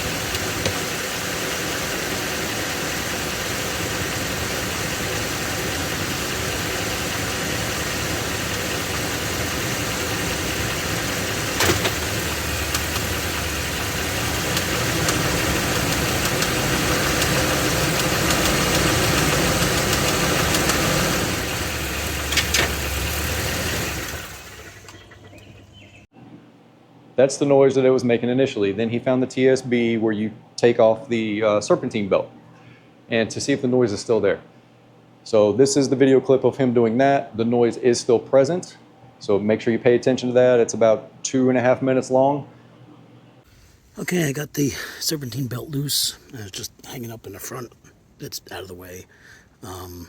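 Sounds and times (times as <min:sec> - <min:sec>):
engine running with internal noise: 0:00.0 - 0:26.1
sharp clicks: 0:14.5 - 0:20.8.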